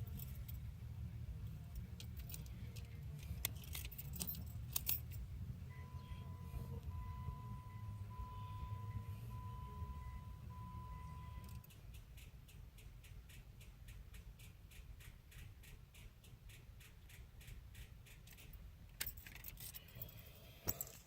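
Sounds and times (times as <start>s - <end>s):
electronic chime: 5.7s - 11.6s
rapid faint clicking: 11.4s - 19.1s.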